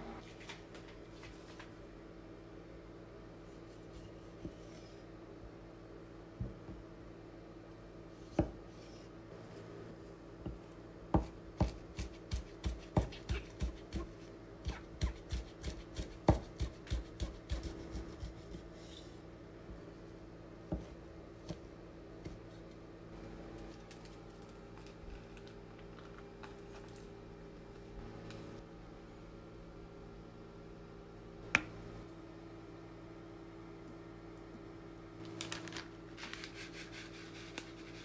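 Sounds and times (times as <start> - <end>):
knife chopping on cutting board: 11.2 - 18.6.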